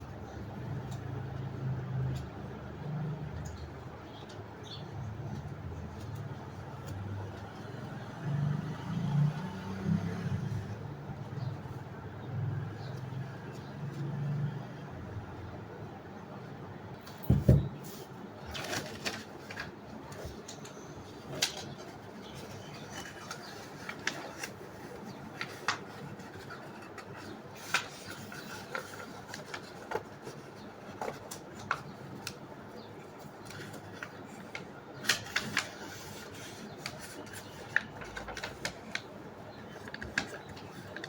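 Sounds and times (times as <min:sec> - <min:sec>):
paper crinkling while folded: 0:17.9 - 0:41.0.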